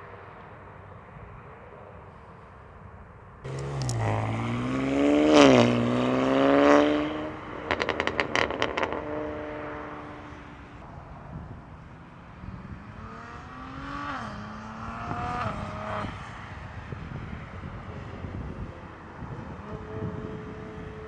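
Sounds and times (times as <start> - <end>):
exhaust pops and crackles: 3.5 - 4.2, 7.7 - 9.1
car engine accelerating hard: 3.5 - 10.3.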